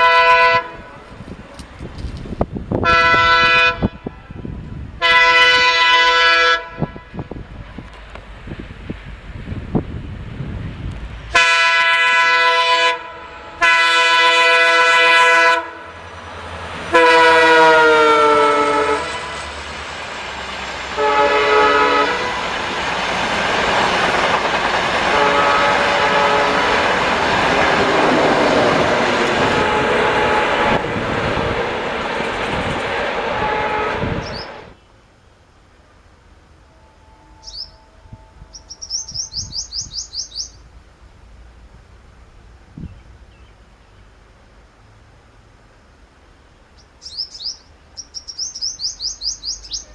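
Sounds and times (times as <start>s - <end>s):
locomotive horn blasts: 0.0s - 1.0s, 2.8s - 7.3s, 11.3s - 15.9s, 16.9s - 19.5s, 20.9s - 22.6s, 25.0s - 27.0s, 29.4s - 30.9s, 33.3s - 34.5s, 36.6s - 39.0s
train running noise: 0.0s - 49.9s.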